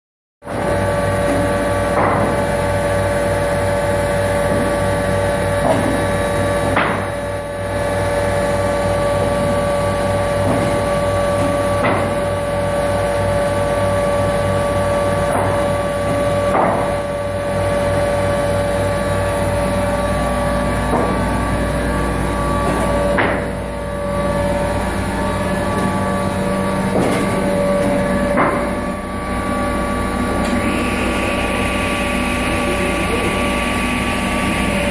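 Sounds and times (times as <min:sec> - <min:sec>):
planer machine whine and hum: 0:00.5 - 0:34.9
boards knocking in planer: 0:01.2 - 0:02.6, 0:05.6 - 0:07.2, 0:10.3 - 0:12.4, 0:15.2 - 0:17.2, 0:20.8 - 0:23.6, 0:26.8 - 0:28.8.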